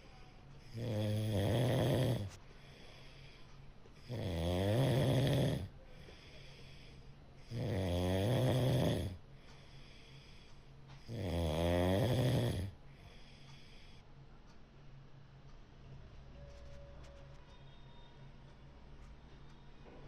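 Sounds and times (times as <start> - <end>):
cat snoring: 0.6 - 2.4, 4.0 - 6.8, 7.4 - 9.2, 11.0 - 13.9.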